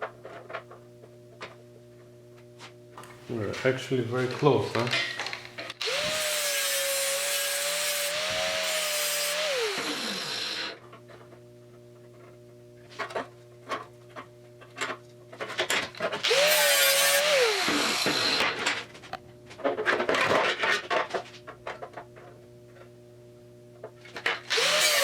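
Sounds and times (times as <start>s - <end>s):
steady low hum: 0.0s - 6.3s, 9.4s - 16.7s, 17.3s - 24.4s
electric grinder grinding metal: 5.8s - 10.8s, 16.2s - 18.6s, 24.5s - 25.0s.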